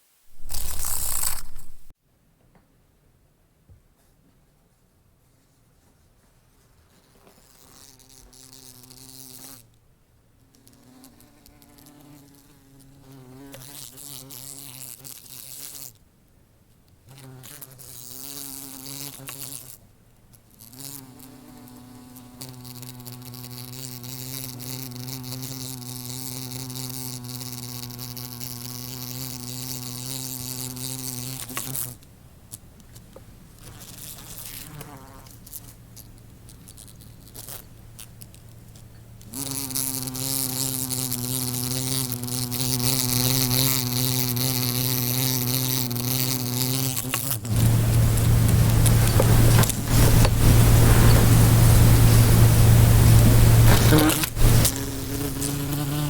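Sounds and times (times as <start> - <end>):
bees buzzing: 47.1 - 56.0.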